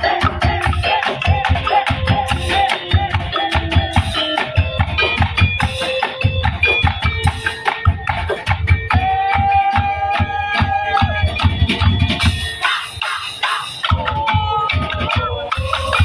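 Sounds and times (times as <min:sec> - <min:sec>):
bamboo slit drums: 0:00.0 - 0:16.0
drums beating fast: 0:00.0 - 0:16.0.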